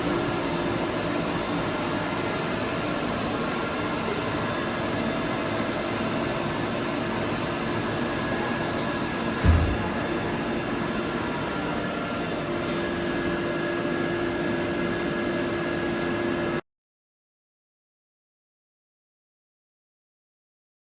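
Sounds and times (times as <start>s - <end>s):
machine hum and whine: 0.0s - 16.6s
thump: 9.4s - 10.0s.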